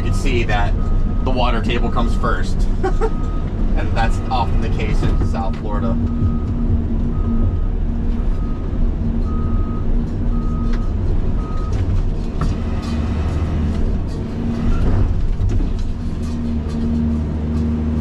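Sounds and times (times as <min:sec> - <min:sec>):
electronic warning beep: 0:00.0 - 0:11.8
excavator diesel engine: 0:00.0 - 0:18.0.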